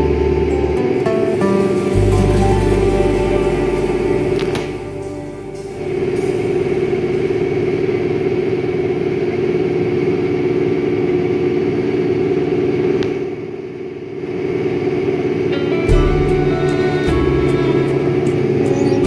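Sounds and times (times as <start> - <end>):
round baler: 0.0 - 13.3
tractor running: 0.0 - 13.3.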